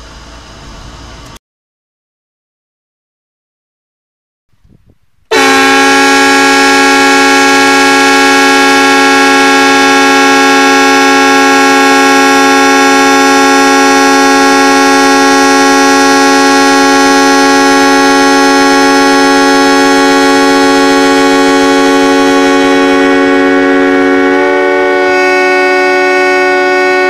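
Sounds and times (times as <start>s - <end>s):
air horn blast: 5.3s - 27.0s.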